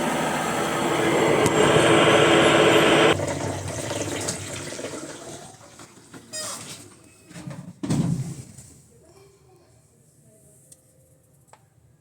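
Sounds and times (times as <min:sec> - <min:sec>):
washing machine spin noise: 0:00.0 - 0:06.1.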